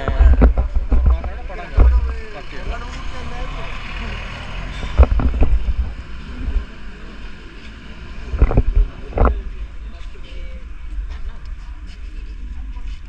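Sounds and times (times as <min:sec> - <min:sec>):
wind buffeting microphone: 0:00.0 - 0:02.2, 0:04.8 - 0:06.9, 0:08.0 - 0:10.0.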